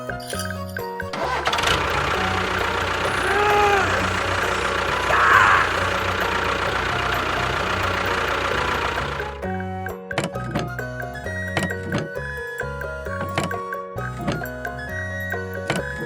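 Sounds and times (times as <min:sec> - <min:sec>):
engine chugging: 0:00.5 - 0:16.0.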